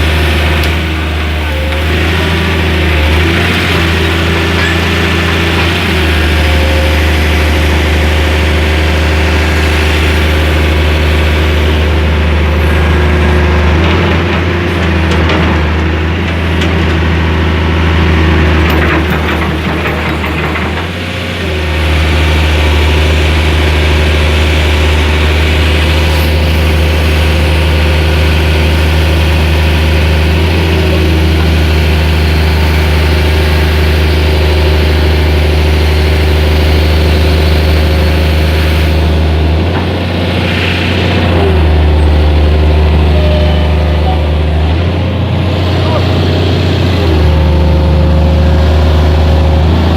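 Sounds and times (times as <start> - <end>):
diesel engine running: 0.0 - 49.9.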